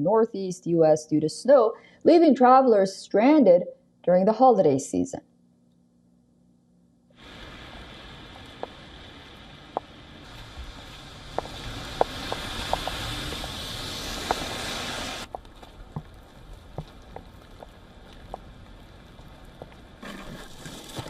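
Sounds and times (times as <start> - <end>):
steady rushing noise: 7.2 - 20.0.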